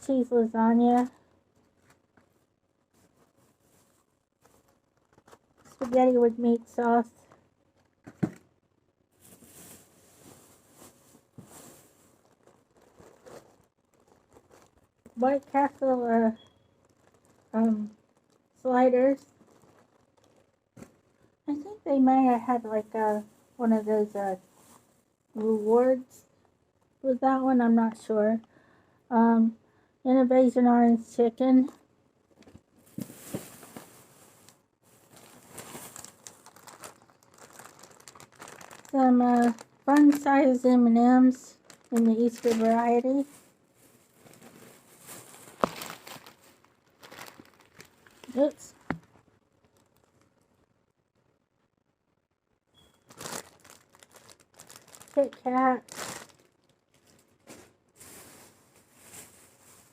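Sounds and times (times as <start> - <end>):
grocery packaging crinkling: 0.8 - 8.4, 9.1 - 21.2, 32.8 - 50.6, 52.8 - 59.9.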